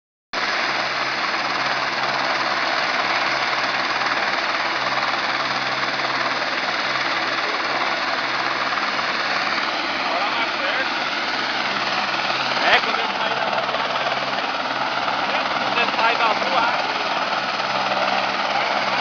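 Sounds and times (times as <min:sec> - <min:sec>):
helicopter running close by: 0:00.4 - 0:19.0.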